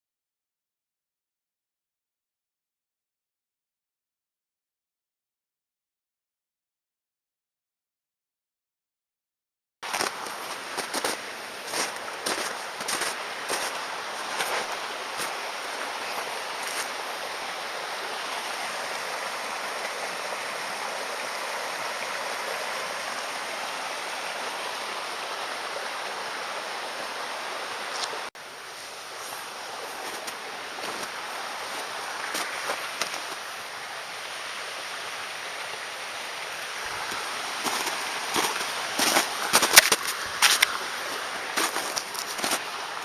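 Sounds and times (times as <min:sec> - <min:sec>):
flowing water rushing: 0:09.8 - 0:43.0.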